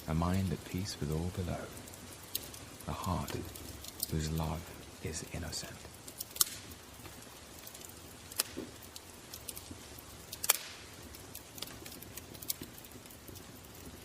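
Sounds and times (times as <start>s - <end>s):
wood fire crackling: 0.0s - 14.0s.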